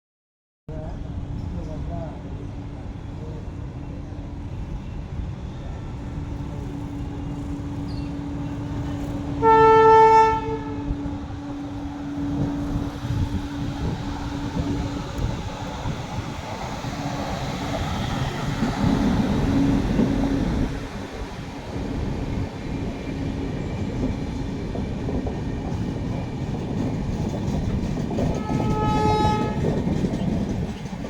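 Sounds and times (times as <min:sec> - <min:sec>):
passing train rumble: 0:00.7 - 0:31.0
train horn blast: 0:09.3 - 0:11.1, 0:28.3 - 0:30.0.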